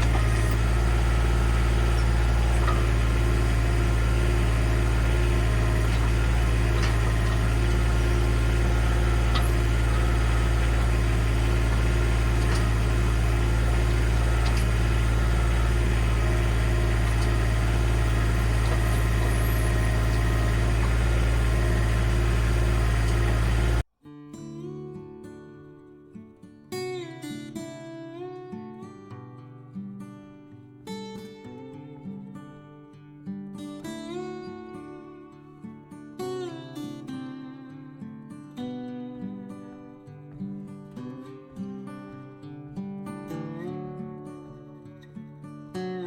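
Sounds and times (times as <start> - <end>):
faint clicks: 0.0 - 23.8
heavy machine engine running: 0.0 - 23.8.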